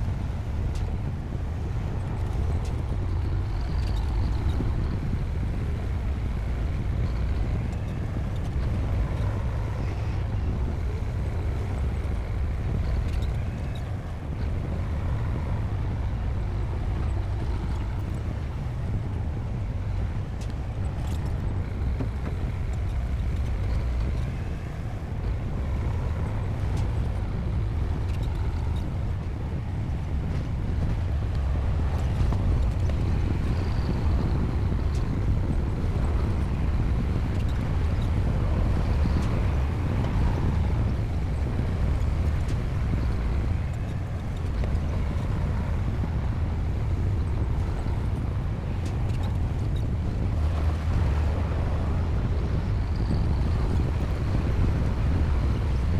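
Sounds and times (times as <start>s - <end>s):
bulldozer diesel engine rumbling: 0.0s - 55.9s.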